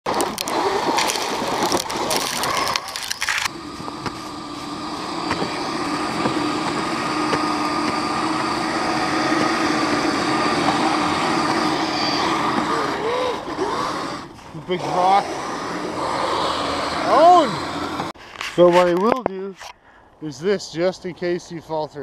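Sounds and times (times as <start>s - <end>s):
crackling and knocking: 0.1s - 12.8s
electric motor whining: 0.1s - 18.2s.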